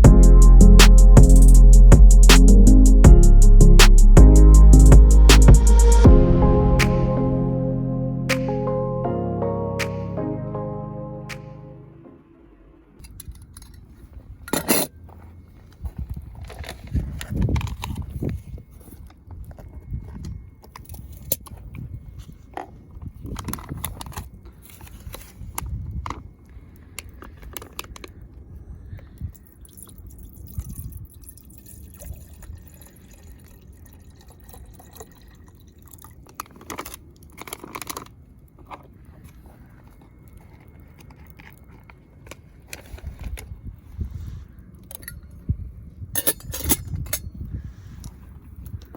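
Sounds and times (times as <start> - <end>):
low rumble: 0.0 - 13.1.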